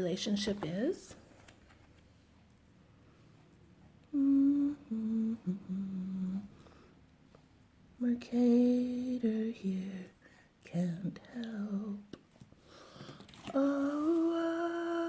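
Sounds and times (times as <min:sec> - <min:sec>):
woman humming: 0:04.1 - 0:06.6, 0:13.5 - 0:15.0.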